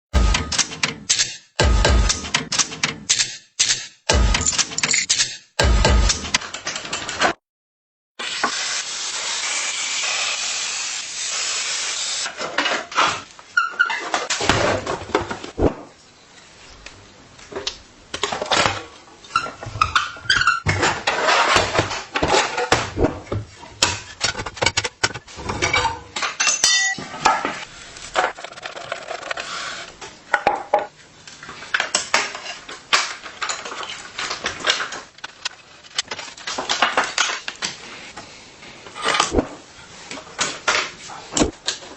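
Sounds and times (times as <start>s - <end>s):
metal tools clinking and scraping: 4.4s - 5.4s, 24.0s - 27.4s
steady hiss: 8.2s - 12.3s.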